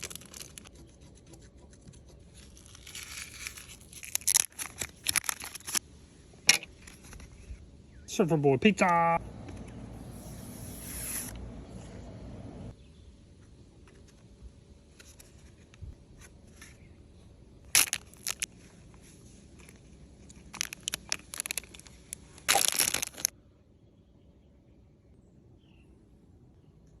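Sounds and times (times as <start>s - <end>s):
packaging crinkling: 0.0s - 0.7s, 2.3s - 5.8s, 17.8s - 18.6s, 19.6s - 23.3s
packaging tearing: 0.0s - 0.7s, 2.4s - 5.8s, 17.8s - 18.5s, 20.4s - 23.3s.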